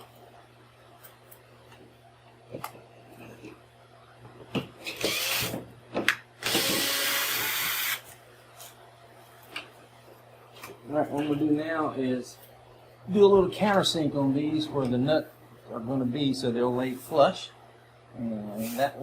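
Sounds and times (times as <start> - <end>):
power drill running: 4.9 - 5.6, 6.4 - 8.0.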